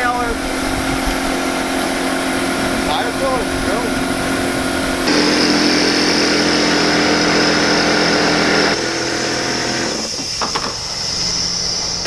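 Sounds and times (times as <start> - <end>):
air compressor running: 0.0 - 12.0.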